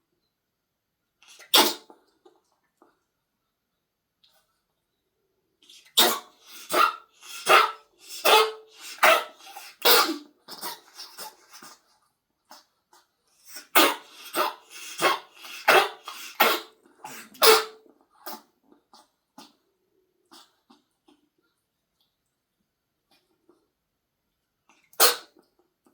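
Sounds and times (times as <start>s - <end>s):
pet hacking coughs: 6.0s - 11.3s, 13.5s - 17.8s.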